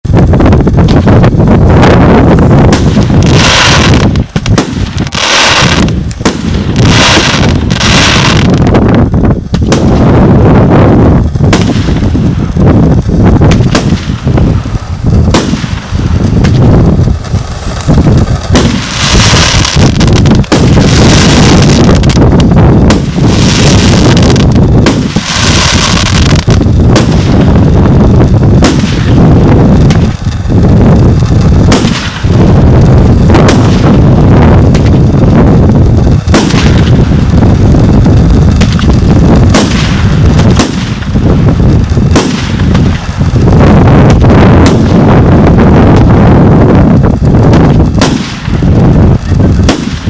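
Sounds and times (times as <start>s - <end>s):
fireworks aerial bursts: 0.0s - 50.0s
hissing crackle: 0.0s - 50.0s
fireworks launch thumps: 2.6s - 50.0s.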